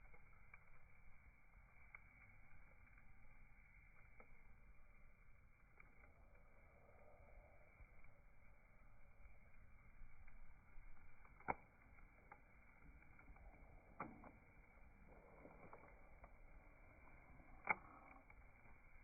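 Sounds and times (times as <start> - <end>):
burning wood popping: 0.0 - 6.7, 7.7 - 19.0
bonfire crackling: 0.0 - 19.0
faint hiss: 1.4 - 10.7.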